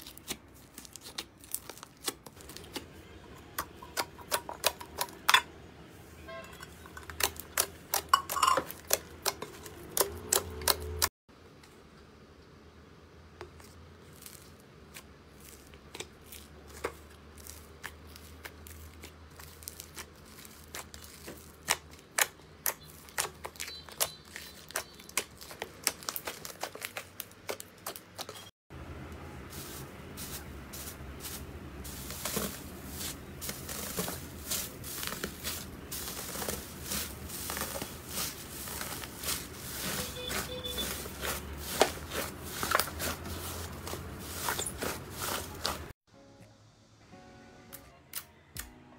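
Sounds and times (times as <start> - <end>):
slime crackling and popping: 0.0 - 2.8, 14.1 - 28.4, 32.1 - 43.2.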